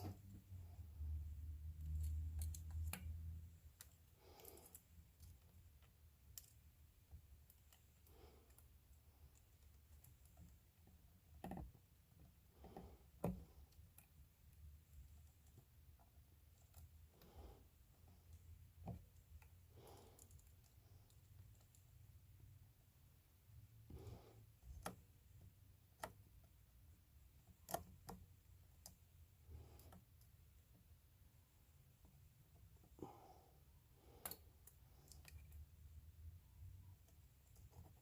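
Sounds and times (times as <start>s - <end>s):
small clicks and taps of tools: 25.9s - 26.7s, 27.4s - 29.0s.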